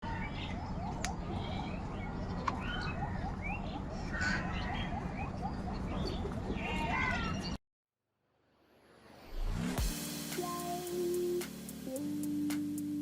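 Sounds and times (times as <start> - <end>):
bird calls: 0.0 - 7.6
crows calling: 2.5 - 4.9, 6.1 - 7.5.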